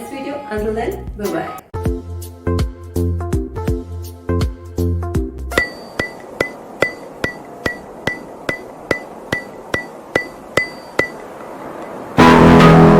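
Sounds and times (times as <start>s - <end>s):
music: 0.0s - 6.1s, 12.2s - 12.9s
sharp ticks with ringing tone: 5.5s - 12.0s.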